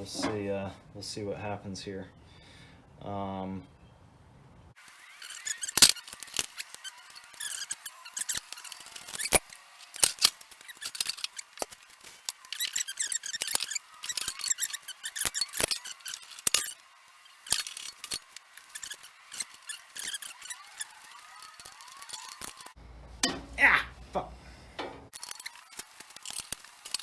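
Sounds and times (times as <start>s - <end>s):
metal parts clicking and scraping: 0.0s - 0.6s, 5.2s - 23.6s, 24.7s - 27.0s.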